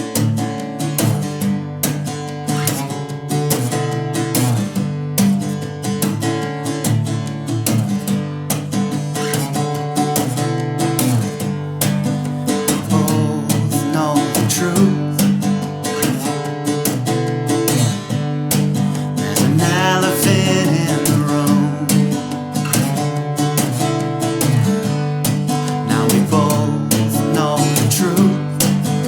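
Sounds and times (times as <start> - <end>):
acoustic guitar strumming: 0.0 - 29.0
person singing: 12.7 - 15.4, 19.1 - 22.9, 25.6 - 29.0.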